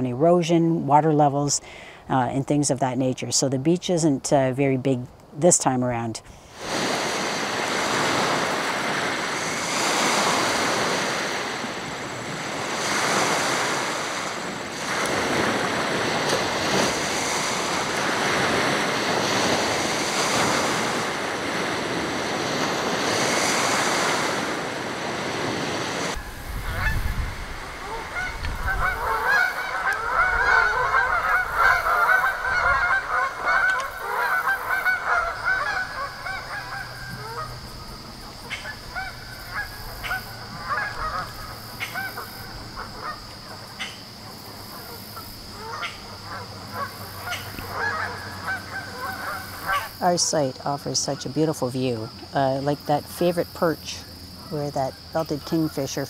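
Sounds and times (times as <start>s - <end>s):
lake waves washing onto beach: 6.5s - 53.9s
geese honking: 26.2s - 50.0s.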